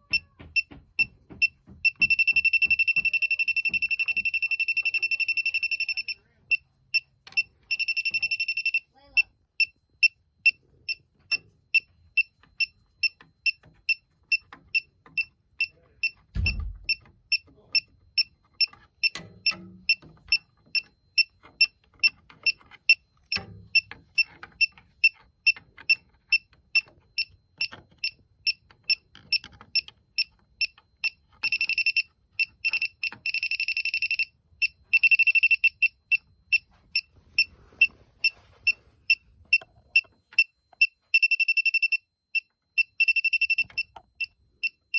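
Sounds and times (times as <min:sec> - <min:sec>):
leak detector beeping: 0:00.0 - 0:44.9
low thump: 0:16.3 - 0:17.0.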